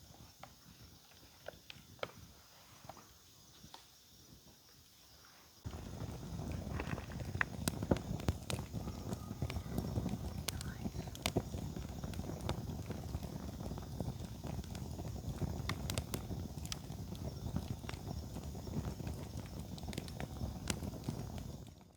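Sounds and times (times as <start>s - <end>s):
campfire crackling and popping: 5.6s - 21.9s.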